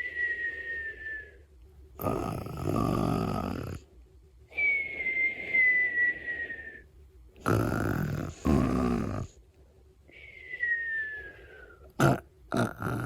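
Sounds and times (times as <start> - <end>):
high whistling breath: 0.0 - 1.6, 4.5 - 7.0, 10.1 - 11.9
person snoring: 2.0 - 3.8, 7.4 - 9.4, 11.9 - 13.0.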